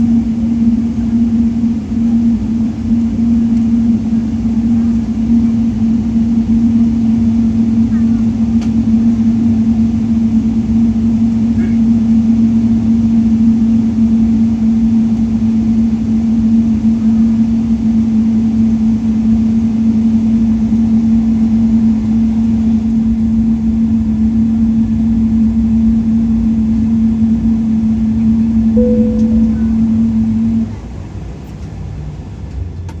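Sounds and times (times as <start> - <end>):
airplane cabin hum: 22.2 - 31.1
chime tone: 28.8 - 30.2.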